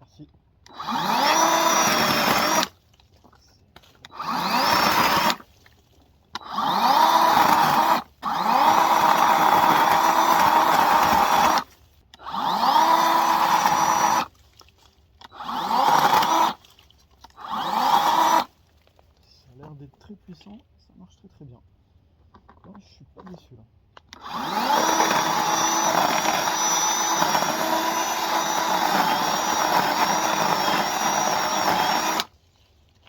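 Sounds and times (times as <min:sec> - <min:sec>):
cordless chainsaw running: 0:00.7 - 0:02.8, 0:04.1 - 0:05.4, 0:06.4 - 0:14.3, 0:15.2 - 0:16.6, 0:17.4 - 0:18.5, 0:24.2 - 0:32.3.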